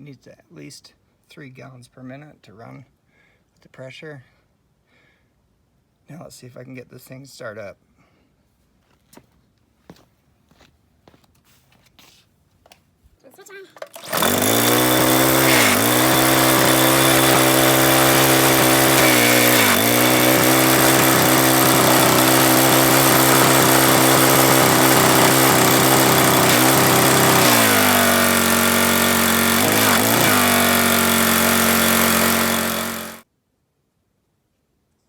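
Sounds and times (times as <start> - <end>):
small gasoline engine running: 13.8 - 33.2.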